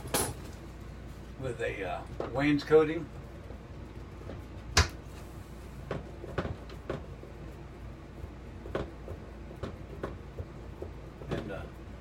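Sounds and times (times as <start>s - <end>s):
knocks and clunks of handling: 2.1s - 2.5s, 5.8s - 7.2s, 8.6s - 11.7s.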